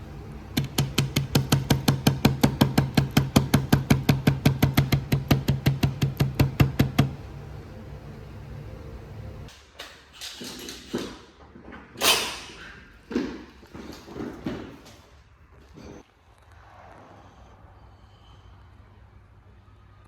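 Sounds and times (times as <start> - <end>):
low steady hum: 0.0 - 9.5
tools knocking and clunking: 0.6 - 7.2.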